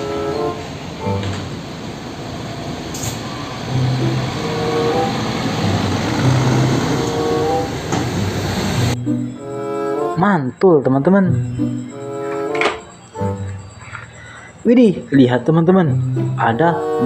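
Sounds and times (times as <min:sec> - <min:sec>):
soft background melody: 0:00.0 - 0:01.9, 0:03.5 - 0:07.9, 0:08.8 - 0:17.0
truck engine running: 0:00.0 - 0:09.1.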